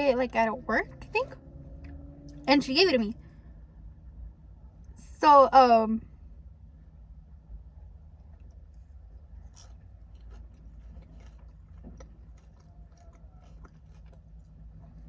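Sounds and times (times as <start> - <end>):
low steady hum: 0.0 - 15.0
person chewing food: 8.1 - 15.0.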